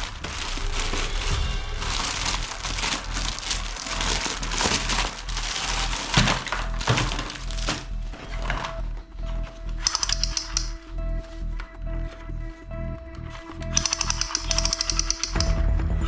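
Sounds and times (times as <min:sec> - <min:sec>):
plastic packaging crinkling: 0:00.0 - 0:09.0
background music: 0:00.0 - 0:16.0.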